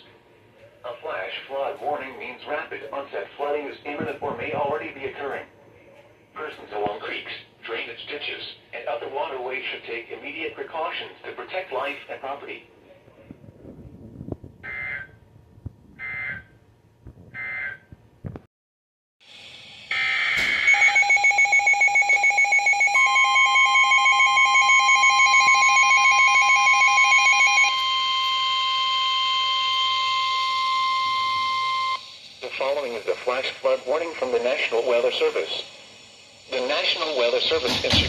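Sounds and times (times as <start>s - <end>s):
long steady warning alarm tone: 14.6s - 15.2s, 16.0s - 16.5s, 17.4s - 17.9s, 19.9s - 37.6s
pulsing electronic beeping alarm: 14.6s - 15.2s, 16.0s - 16.5s, 17.4s - 17.9s, 19.9s - 37.3s
electronic data bursts: 19.9s - 38.0s.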